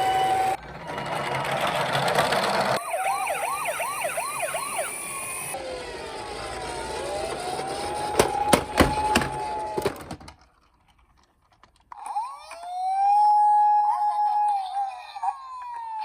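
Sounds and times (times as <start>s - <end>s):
toy siren wailing: 2.8s - 10.0s, 12.0s - 16.0s.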